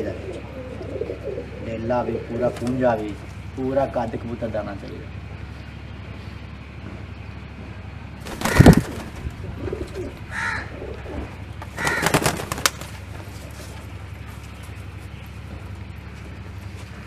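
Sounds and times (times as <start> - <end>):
pigeons cooing: 0.0 - 3.0, 8.3 - 12.7.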